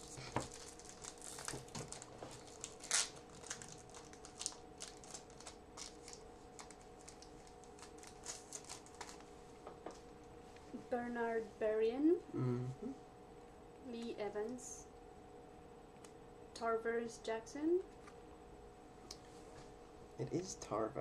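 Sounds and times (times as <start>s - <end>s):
card pack wrapper crinkling: 0.0s - 9.3s
faint steady hum: 0.0s - 21.0s.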